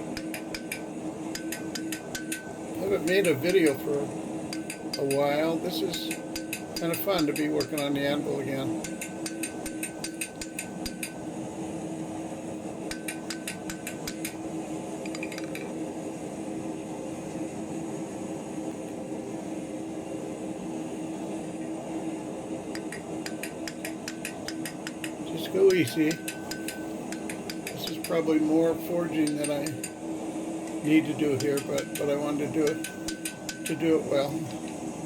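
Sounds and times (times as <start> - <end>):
steady hum: 0.0 - 35.0
hammer tapping iron on anvil: 4.5 - 8.1, 8.8 - 11.2, 25.7 - 28.2, 29.2 - 30.0, 31.4 - 34.0.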